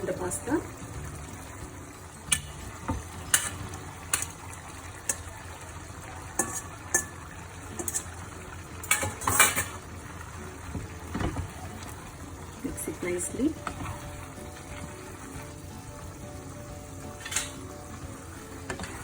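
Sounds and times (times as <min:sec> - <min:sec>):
sauce bubbling and sizzling in pan: 0:00.0 - 0:19.0
utensil clinking against pan: 0:03.3 - 0:04.3, 0:06.4 - 0:08.2, 0:08.8 - 0:09.8, 0:17.2 - 0:17.7.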